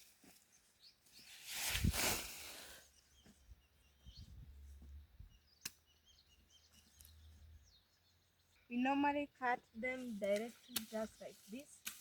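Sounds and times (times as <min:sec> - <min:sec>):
rustling swish of leafy stems: 0:01.1 - 0:02.8, 0:10.1 - 0:12.0.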